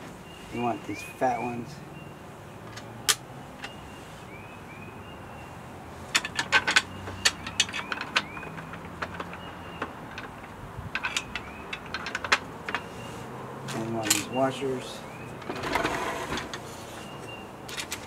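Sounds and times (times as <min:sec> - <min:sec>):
metal bolts and washers clinking: 0:06.1 - 0:13.0, 0:13.7 - 0:14.6, 0:17.7 - 0:18.0.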